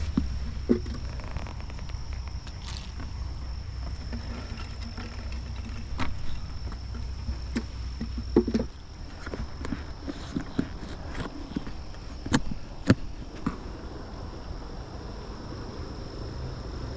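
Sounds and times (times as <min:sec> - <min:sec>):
knocks and scrapes on wood: 0:00.0 - 0:01.7, 0:03.8 - 0:13.6.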